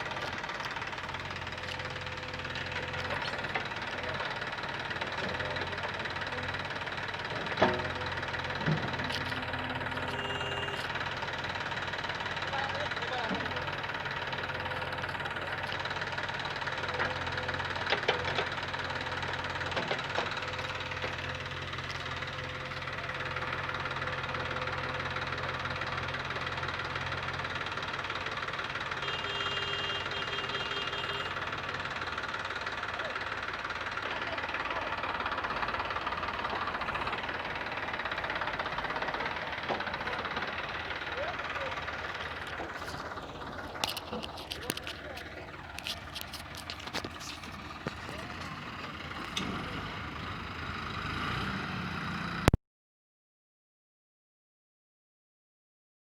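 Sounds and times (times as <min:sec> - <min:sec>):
heavy diesel engine running: 0:00.0 - 0:52.6
brief high tone: 0:10.0 - 0:10.9.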